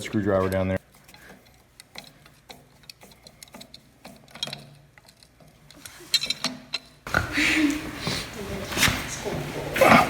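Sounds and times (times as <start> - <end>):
hand tools clicking and tapping: 0.0 - 7.3.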